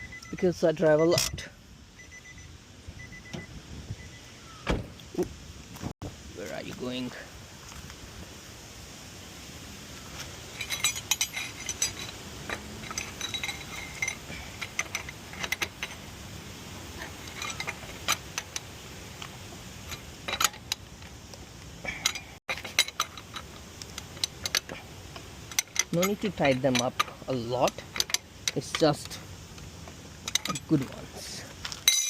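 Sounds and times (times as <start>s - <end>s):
metallic clinks of tool on nut: 10.6s - 16.0s, 25.5s - 29.2s, 30.3s - 30.8s
metal wrench ratcheting on wheel nuts: 10.6s - 16.1s, 16.9s - 20.9s, 21.9s - 32.0s.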